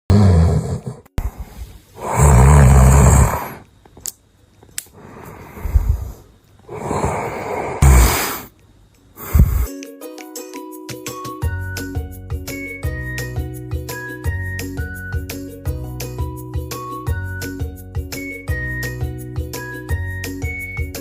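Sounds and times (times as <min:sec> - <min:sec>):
man snoring loudly: 0:00.1 - 0:01.2, 0:02.0 - 0:03.6, 0:06.7 - 0:08.5
snort: 0:00.1 - 0:03.7, 0:05.0 - 0:08.5
light tinkling music: 0:09.7 - 0:21.0.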